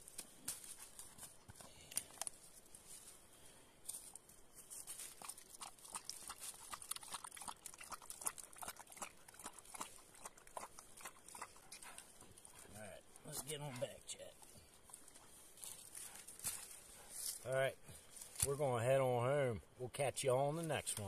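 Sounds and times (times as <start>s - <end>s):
dog lapping water: 5.1s - 12.8s.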